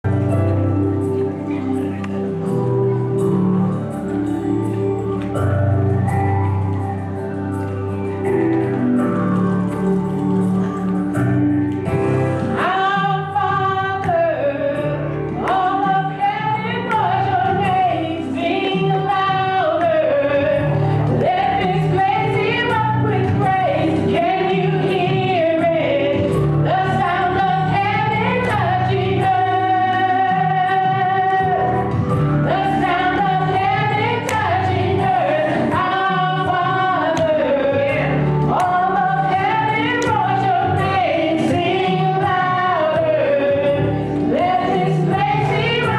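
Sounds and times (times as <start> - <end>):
music: 0.0 - 45.9
gospel singing: 11.9 - 45.9.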